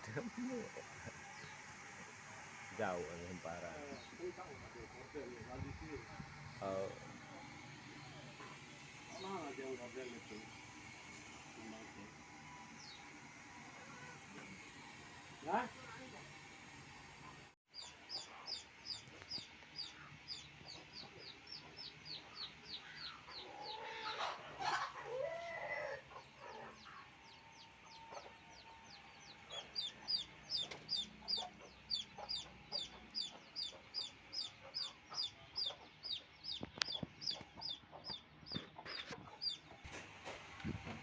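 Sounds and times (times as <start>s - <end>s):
chicks peeping: 17.8s - 25.4s, 26.1s - 40.0s.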